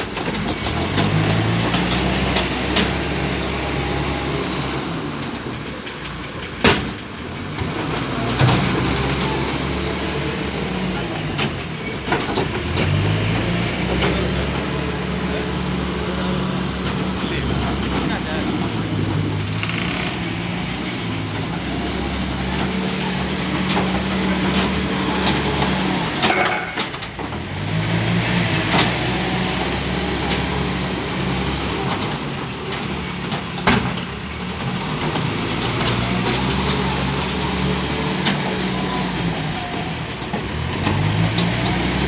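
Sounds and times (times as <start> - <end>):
backhoe engine running: 0.0 - 42.0
sharp metal knocks: 26.2 - 27.0
ringing metallic clank: 26.3 - 27.0.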